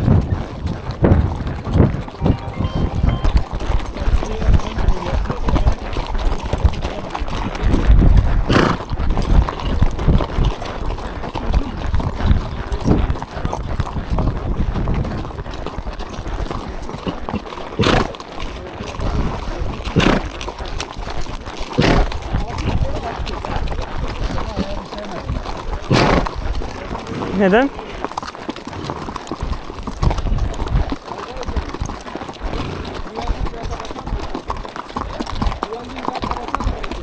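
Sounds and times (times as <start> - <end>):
horse hoofbeats on a trail: 0.0 - 37.0.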